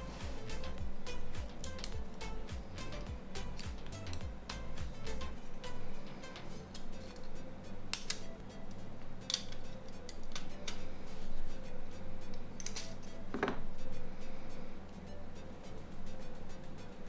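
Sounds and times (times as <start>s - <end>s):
soft background music: 0.0s - 17.0s
clicks of tools and plastic parts: 1.4s - 2.0s, 6.3s - 11.4s, 12.3s - 13.6s.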